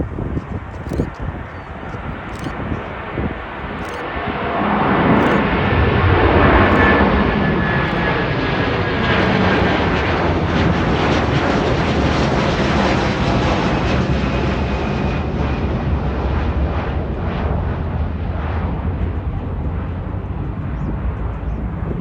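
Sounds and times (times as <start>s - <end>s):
high engine whine: 0.0s - 22.0s
jet engine roar: 0.0s - 22.0s.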